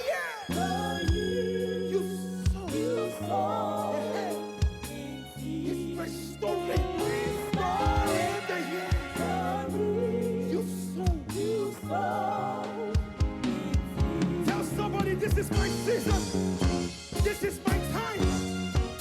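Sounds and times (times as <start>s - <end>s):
person singing: 0.0s - 19.0s
band chords and bass: 12.9s - 19.0s.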